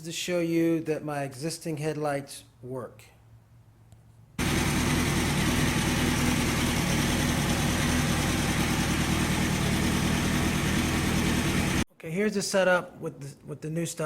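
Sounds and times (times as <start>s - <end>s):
motorcycle engine idling: 4.4s - 11.8s.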